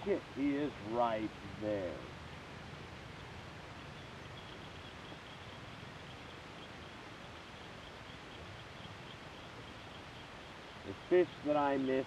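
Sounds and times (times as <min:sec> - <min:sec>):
steady low hiss: 0:00.0 - 0:12.0
faint high chirping: 0:03.7 - 0:12.0.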